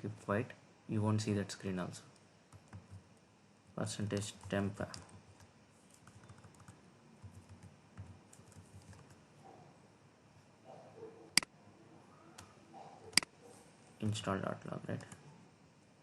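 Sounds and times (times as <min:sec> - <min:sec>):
computer keyboard typing: 0:02.5 - 0:03.0, 0:04.1 - 0:09.2.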